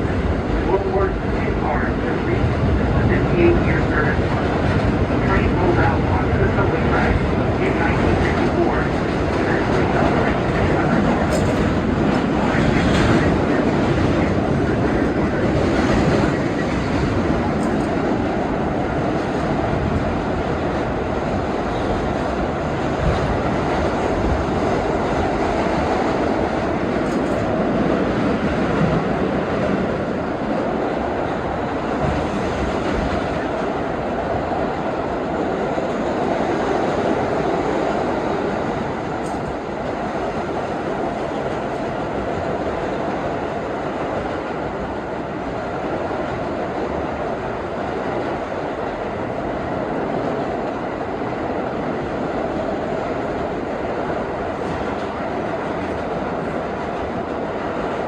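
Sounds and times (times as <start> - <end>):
train wheels rumbling on rail: 0.0 - 58.0.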